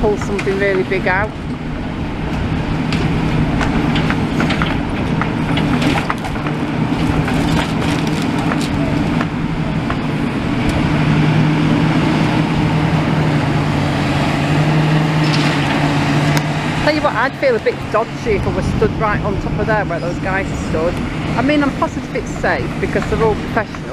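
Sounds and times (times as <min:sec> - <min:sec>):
heavy machine engine running: 0:00.0 - 0:23.9.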